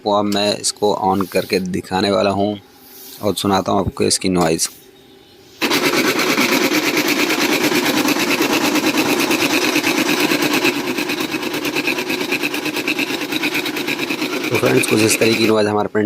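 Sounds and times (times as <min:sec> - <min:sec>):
laser printer gear rattling: 0:05.6 - 0:15.6.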